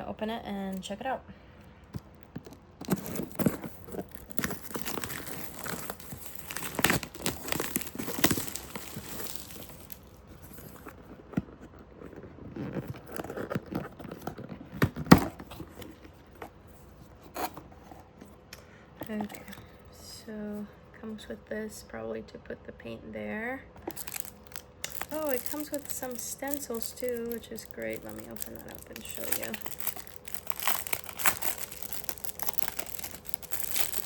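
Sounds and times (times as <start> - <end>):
packaging rustling: 1.9 - 18.0, 23.8 - 34.0
packaging tearing and crinkling: 2.3 - 16.0, 23.8 - 34.0.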